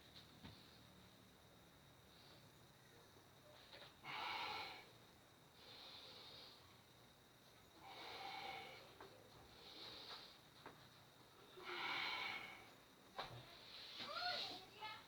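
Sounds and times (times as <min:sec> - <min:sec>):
person breathing: 0:07.8 - 0:10.4, 0:11.6 - 0:12.8.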